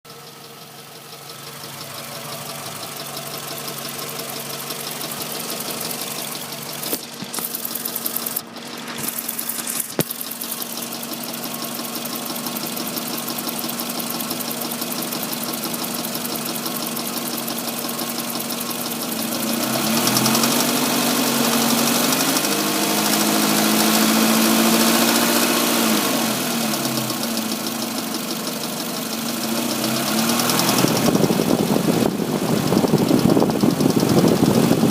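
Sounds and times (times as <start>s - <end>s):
engine idling with ticking: 0.1s - 34.9s
sharp clicks: 6.7s - 10.9s.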